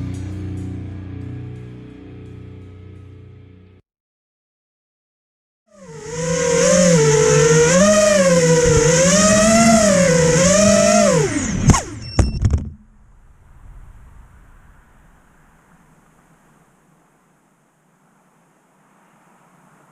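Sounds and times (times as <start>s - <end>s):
drone motors whining: 5.7s - 12.8s
sharp knocks: 11.7s - 12.9s.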